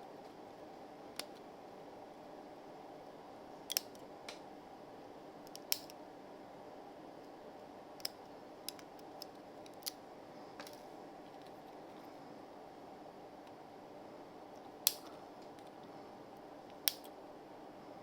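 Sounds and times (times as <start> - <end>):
steady hum: 0.0 - 18.0
sharp clicks or snips: 14.9 - 15.1, 16.7 - 17.1.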